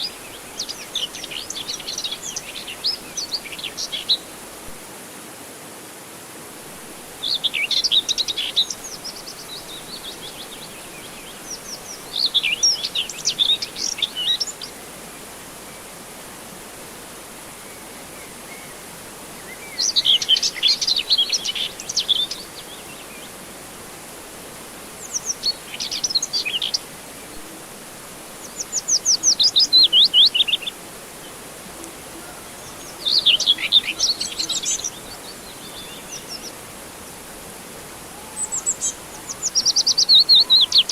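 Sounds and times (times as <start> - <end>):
steady background hiss: 0.0 - 40.9
birds chirping and trilling: 28.4 - 36.7, 38.1 - 40.9.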